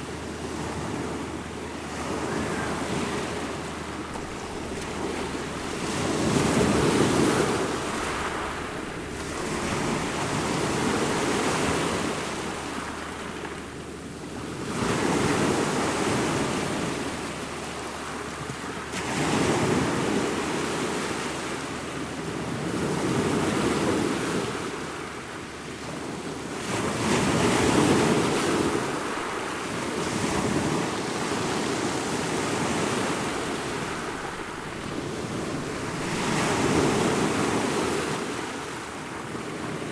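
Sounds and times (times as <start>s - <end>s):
ocean waves breaking on shore: 0.0s - 39.9s.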